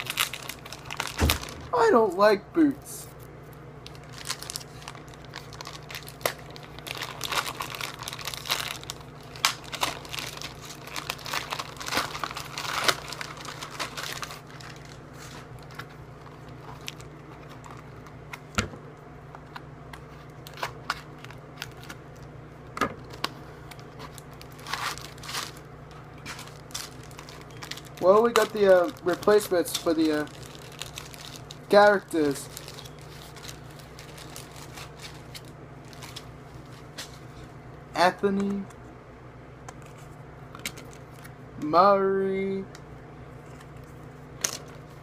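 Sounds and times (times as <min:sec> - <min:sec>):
packaging crinkling and tearing: 0:00.0 - 0:01.8, 0:03.8 - 0:18.2, 0:20.0 - 0:22.3, 0:23.0 - 0:37.2.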